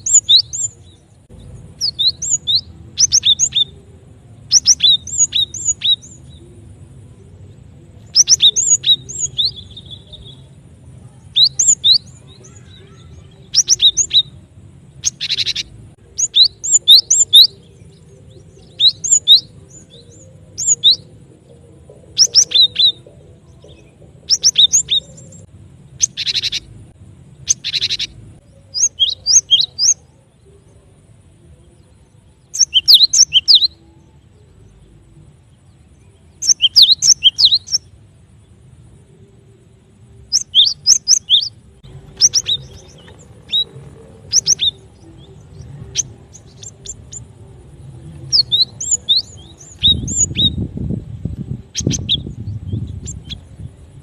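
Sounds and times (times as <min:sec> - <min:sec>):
high bird chirps: 0:00.0 - 0:03.9, 0:04.5 - 0:06.4, 0:08.0 - 0:21.2, 0:22.1 - 0:26.8, 0:27.4 - 0:30.0, 0:32.5 - 0:33.8, 0:36.4 - 0:37.9, 0:40.3 - 0:47.5, 0:48.1 - 0:50.7, 0:51.6 - 0:53.7
harsh buzzy bird churrs: 0:15.0 - 0:17.6, 0:26.0 - 0:26.8, 0:27.5 - 0:28.2, 0:40.3 - 0:44.9.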